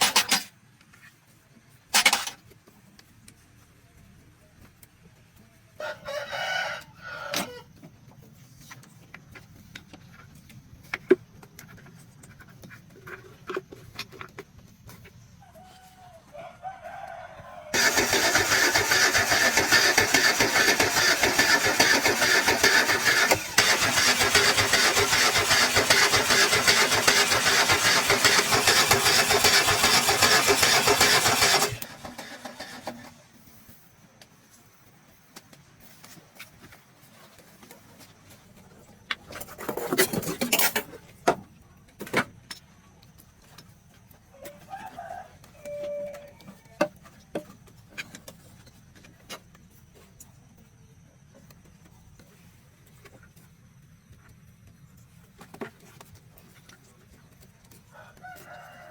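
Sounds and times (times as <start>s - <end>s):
rooster crowing: 5.8s - 7.7s, 15.4s - 17.8s, 44.4s - 46.6s, 57.9s - 58.9s
loud mechanical noise: 17.7s - 33.2s.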